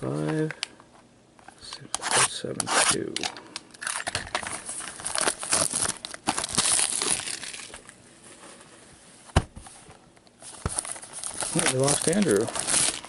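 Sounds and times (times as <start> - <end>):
plastic wrapping crinkling and tearing: 2.0 - 8.0, 10.4 - 13.0.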